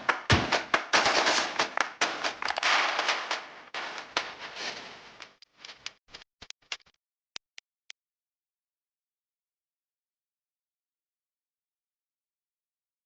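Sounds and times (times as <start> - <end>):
dense crackling and popping: 0.0 - 7.0.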